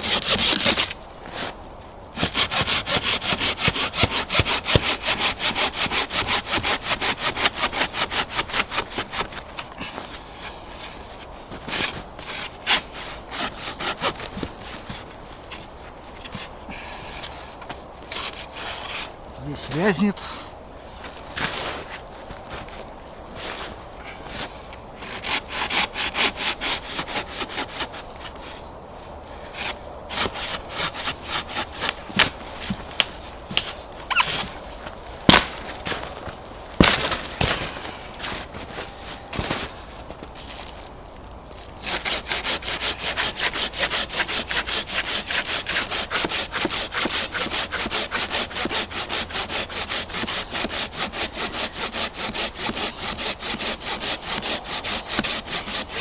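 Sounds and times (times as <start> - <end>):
wood cracking: 0.0 - 1.0, 35.2 - 38.2
hand saw cutting wood: 0.0 - 1.5, 2.2 - 11.0, 11.6 - 15.6, 18.1 - 20.1, 25.0 - 28.6, 29.5 - 32.8, 33.5 - 34.6, 35.3 - 36.1, 36.8 - 39.6, 41.7 - 56.0.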